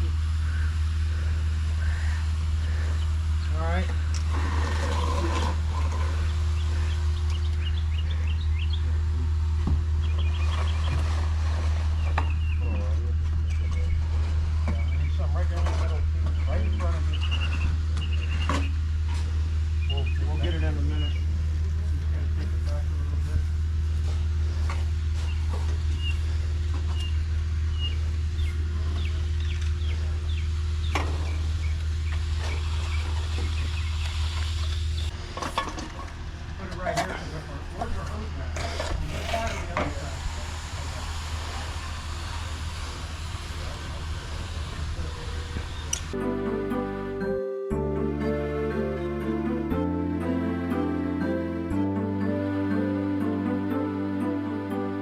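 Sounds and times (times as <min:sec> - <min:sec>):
birds chirping: 0:00.0 - 0:21.5, 0:25.2 - 0:35.2
truck engine rumbling: 0:00.0 - 0:55.0
light scrapes: 0:38.6 - 0:40.0.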